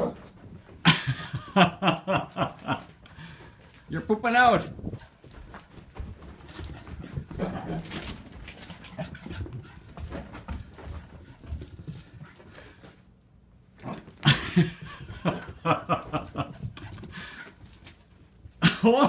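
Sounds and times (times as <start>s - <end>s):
dog paws clicking and thumping: 0.0s - 19.0s
dog panting: 5.0s - 13.0s
dog growling: 7.4s - 7.9s.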